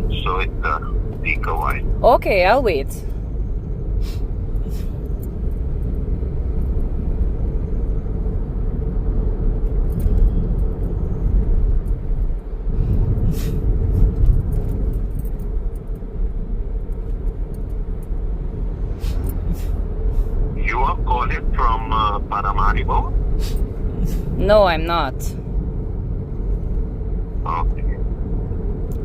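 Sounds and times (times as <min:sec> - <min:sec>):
low rumbling phone line noise: 0:00.0 - 0:13.1.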